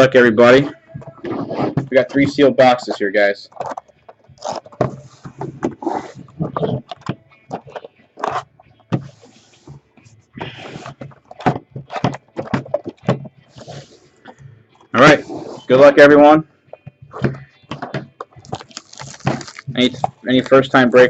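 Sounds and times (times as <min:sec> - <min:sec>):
shrink wrap crinkling and tearing: 0:18.4 - 0:20.6.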